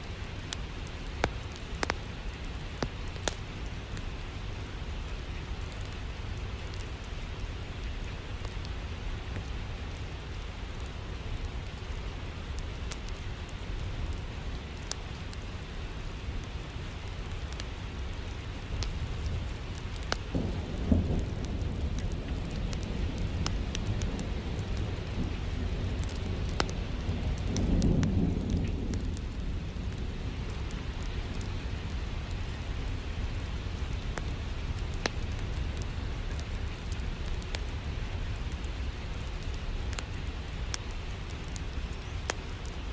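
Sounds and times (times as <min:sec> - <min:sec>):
steady rain: 0:00.0 - 0:42.9
low thunder rolls: 0:20.2 - 0:33.6.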